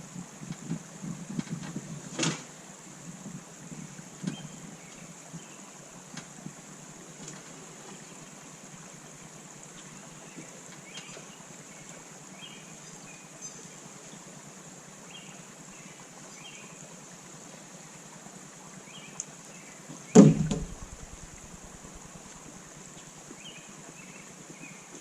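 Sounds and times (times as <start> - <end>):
outdoor background hiss: 0.0 - 25.0
loud thump with rattle: 20.2 - 21.7.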